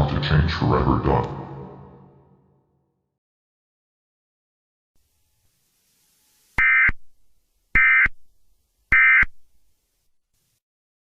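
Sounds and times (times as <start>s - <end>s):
warbling data tone bursts: 6.0s - 7.1s, 7.8s - 8.2s, 8.9s - 9.4s.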